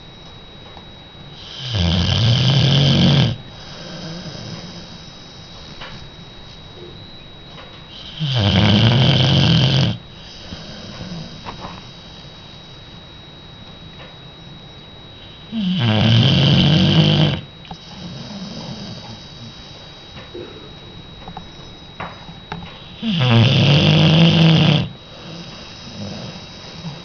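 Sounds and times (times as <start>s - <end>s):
dog snoring loudly: 1.4s - 5.5s, 7.9s - 12.8s, 15.2s - 19.7s, 22.8s - 27.0s
dog breathing softly: 17.7s - 19.9s, 25.1s - 27.0s.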